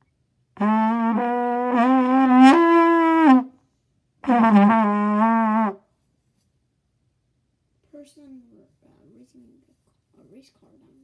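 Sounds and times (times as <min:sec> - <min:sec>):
trumpet long held notes: 0:00.6 - 0:03.6, 0:04.2 - 0:05.8.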